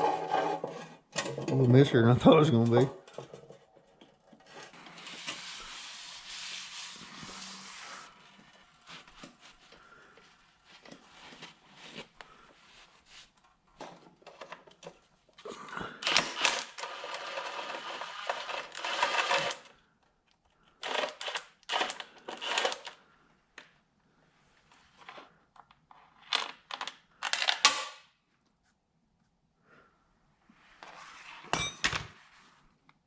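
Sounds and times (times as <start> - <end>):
metal tools clinking and scraping: 31.6 - 32.0.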